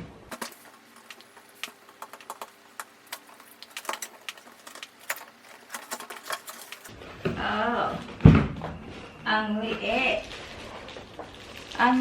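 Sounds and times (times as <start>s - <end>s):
packaging clicks and crackles: 0.3s - 6.9s.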